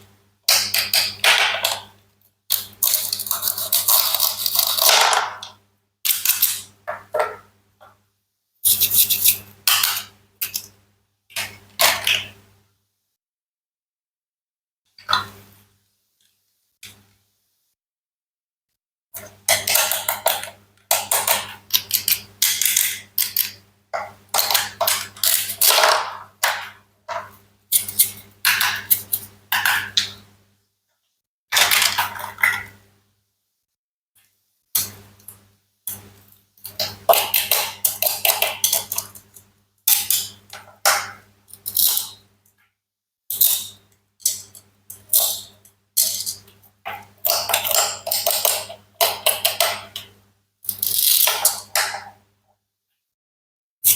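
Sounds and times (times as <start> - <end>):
toy knife cutting toy food: 2.5 - 5.4, 8.7 - 10.6.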